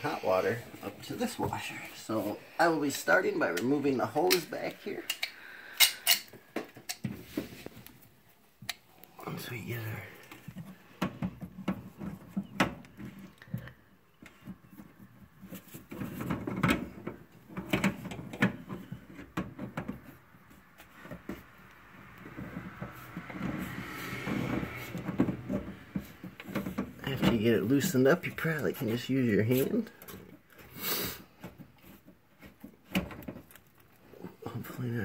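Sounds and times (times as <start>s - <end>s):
rubbing and scraping: 9.2s - 35.0s.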